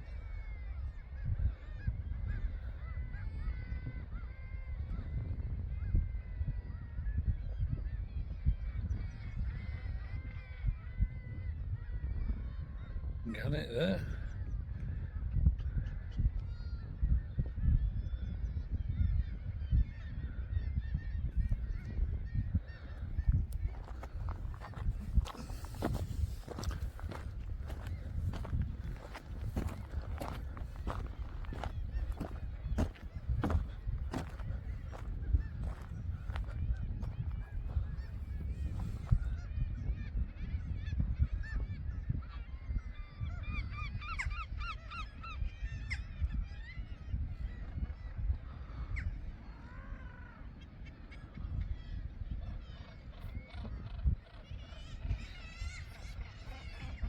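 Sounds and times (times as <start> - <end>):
seabird colony calling: 0.0 - 57.0
wind rumbling on microphone: 0.0 - 57.0
seabirds honking calls: 21.4 - 39.4, 53.4 - 57.0.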